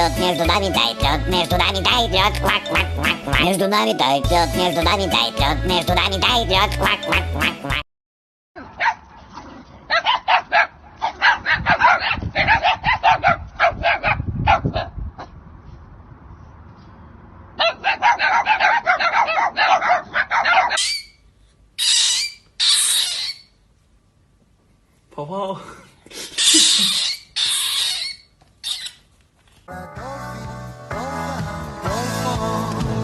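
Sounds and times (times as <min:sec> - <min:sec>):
animal calling in sharp bursts: 0:17.7 - 0:21.2, 0:21.8 - 0:23.6, 0:26.4 - 0:29.0.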